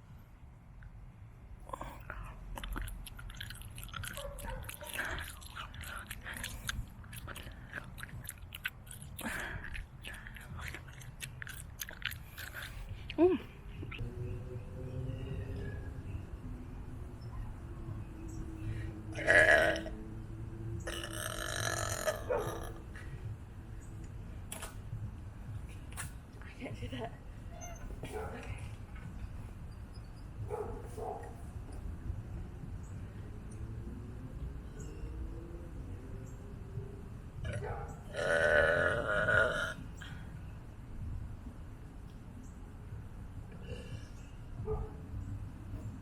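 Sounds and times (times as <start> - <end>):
gum chewing mouth smacks: 1.8 - 13.2
person burping: 19.2 - 19.9, 20.8 - 22.8, 37.5 - 39.8.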